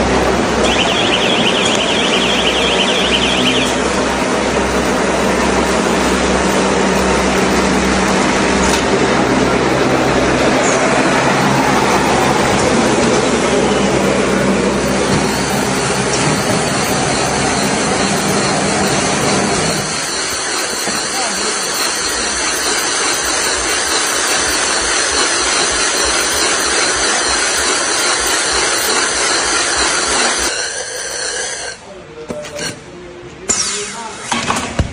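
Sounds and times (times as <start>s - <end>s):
high warbling alarm tone: 0.0s - 30.5s
baling machine mechanical din: 0.0s - 31.8s.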